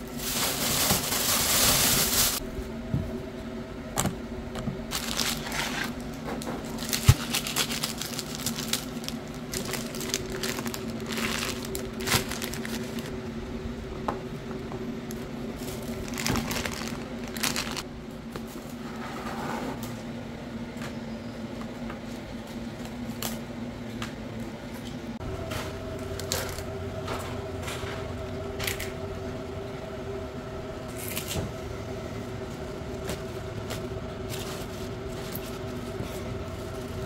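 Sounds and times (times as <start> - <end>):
plastic bags crinkling: 0.0 - 2.4, 4.9 - 13.1, 15.6 - 17.8
steady low hum: 0.0 - 37.0.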